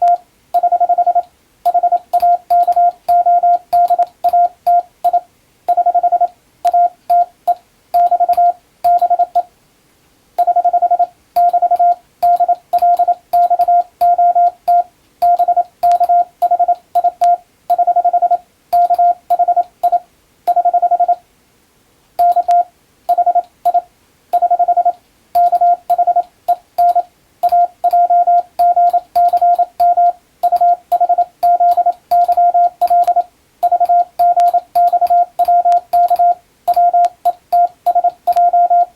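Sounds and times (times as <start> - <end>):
morse code beeps: 0.0 - 9.5, 10.4 - 21.2, 22.2 - 38.9
faint keyer clicks: 28.6 - 38.9.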